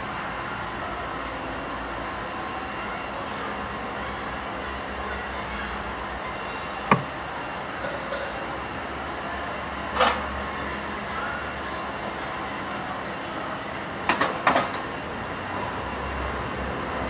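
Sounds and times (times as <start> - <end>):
brief knock: 6.9 - 7.1.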